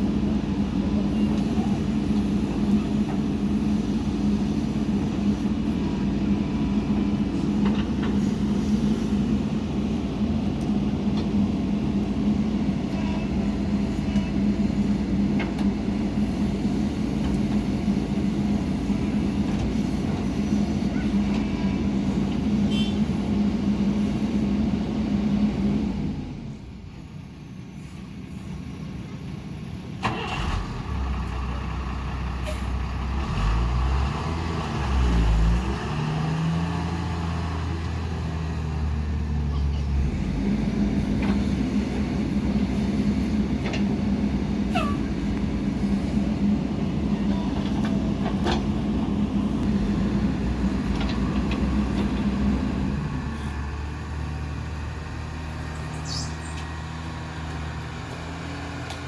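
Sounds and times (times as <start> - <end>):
heavy diesel engine revving: 30.0 - 59.0.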